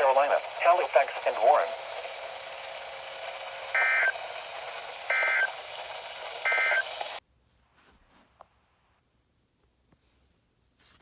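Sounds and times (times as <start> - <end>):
radio hiss: 0.0 - 7.2
two-tone digital data bursts: 3.8 - 4.2, 5.1 - 5.5.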